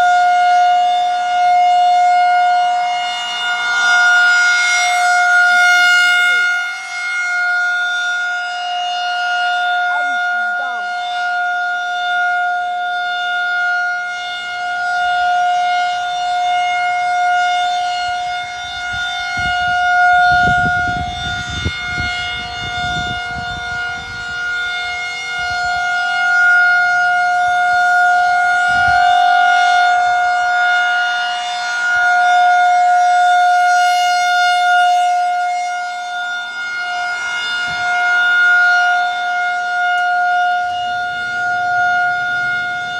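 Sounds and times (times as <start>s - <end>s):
warning siren wailing: 0.0s - 42.9s.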